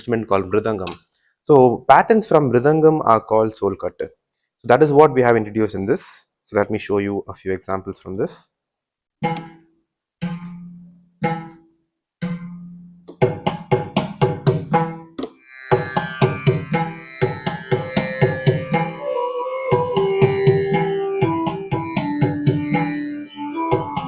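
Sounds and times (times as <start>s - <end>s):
held keyboard notes: 15.7s - 24.0s.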